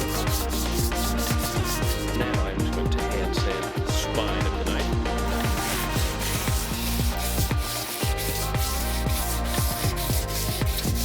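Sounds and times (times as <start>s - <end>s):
sandpaper rubbing: 0.0s - 2.3s, 5.2s - 11.0s
electronic music with kick drum: 0.0s - 11.0s.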